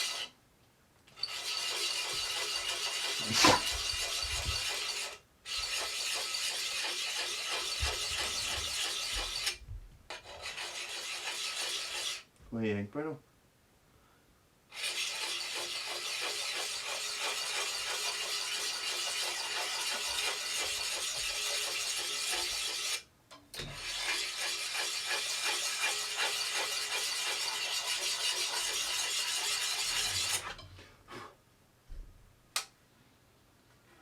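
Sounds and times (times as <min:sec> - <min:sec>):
abrasive rasping on axe blade: 0:01.3 - 0:09.5, 0:23.6 - 0:31.3.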